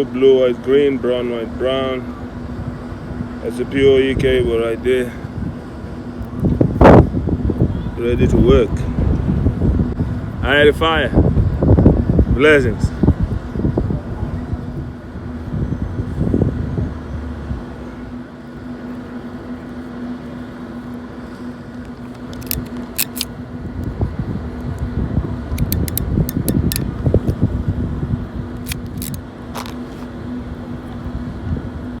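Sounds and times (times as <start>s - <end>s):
steady low hum: 0.0s - 32.0s
sharp clicks: 21.8s - 23.3s, 25.5s - 27.4s, 28.6s - 29.8s.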